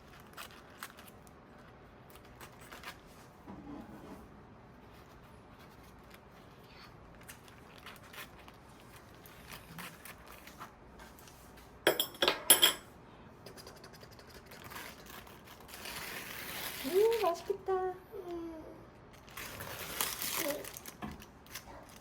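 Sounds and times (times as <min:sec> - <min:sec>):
metal utensils clinking on dishes: 0:11.9 - 0:12.9.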